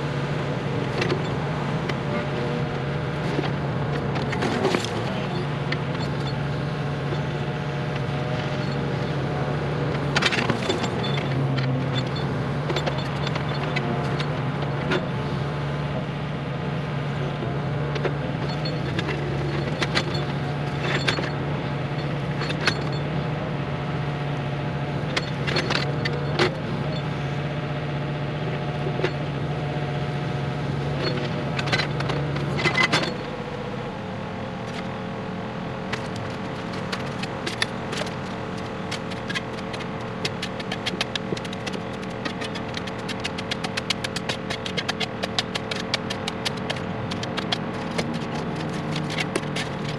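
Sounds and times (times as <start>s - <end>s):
engine running: 0.0s - 49.9s
sharp knocks and clatter: 35.9s - 49.9s.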